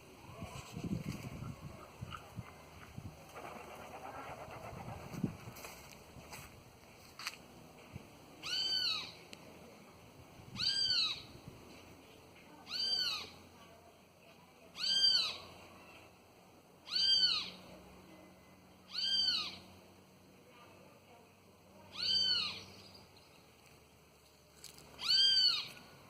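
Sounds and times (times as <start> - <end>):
toucan calling: 10.6 - 11.3, 16.8 - 17.6, 18.9 - 19.7, 25.0 - 25.9.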